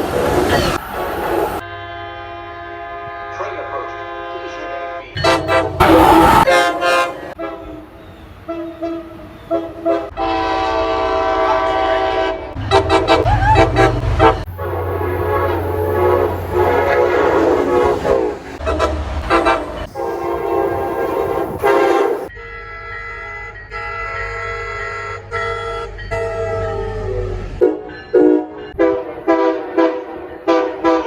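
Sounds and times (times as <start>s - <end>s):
train horn blasts: 1.6s - 31.0s.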